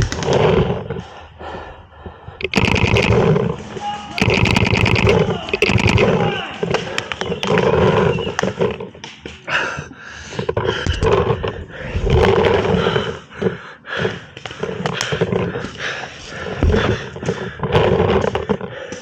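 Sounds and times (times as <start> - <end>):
heavy rasping breathing: 0.0 - 19.0
short sharp clicks: 2.4 - 9.2.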